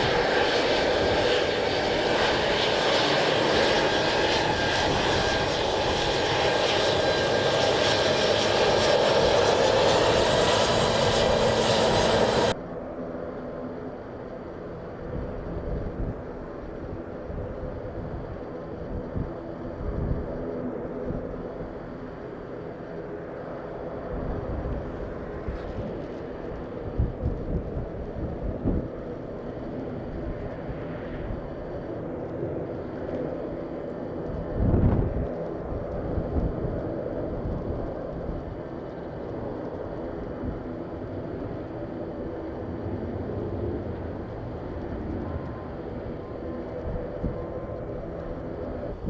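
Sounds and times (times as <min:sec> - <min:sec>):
wind buffeting microphone: 0:24.1 - 0:33.6, 0:34.2 - 0:49.0.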